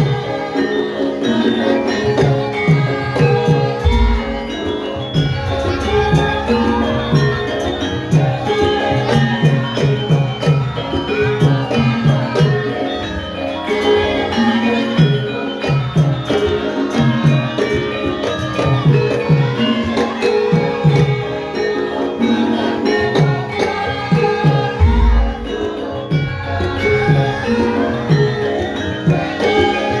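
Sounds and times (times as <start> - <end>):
metallophone tones: 0.0 - 30.0
hand drum strokes bending in pitch: 2.0 - 12.6, 22.6 - 30.0.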